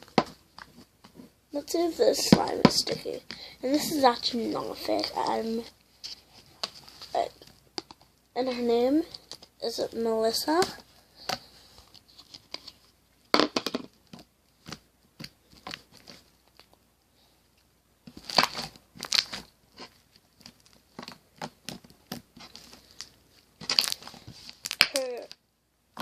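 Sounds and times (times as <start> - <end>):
slime crackling and popping: 18.0 - 25.4.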